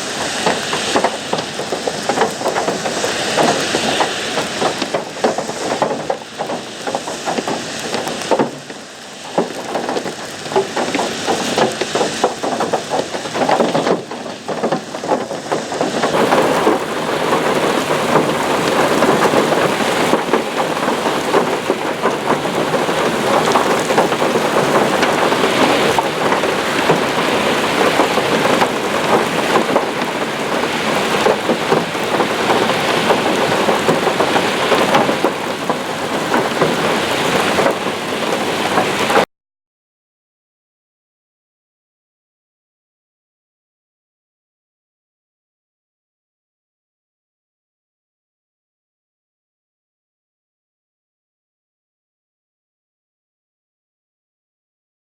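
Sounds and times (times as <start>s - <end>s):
hail and heavy rain pelting: 0.0s - 39.3s.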